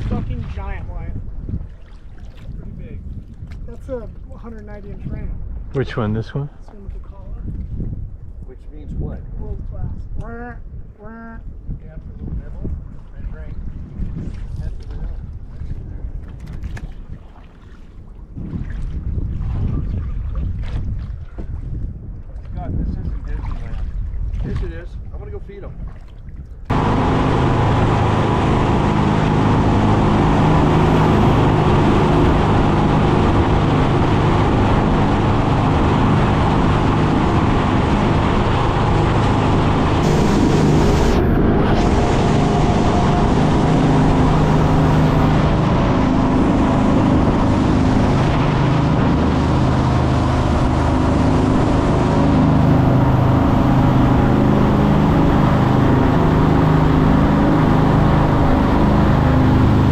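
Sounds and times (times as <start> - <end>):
boat engine running: 0.0 - 8.1, 26.7 - 59.9
water noise: 0.0 - 59.9
wind noise: 0.0 - 59.9.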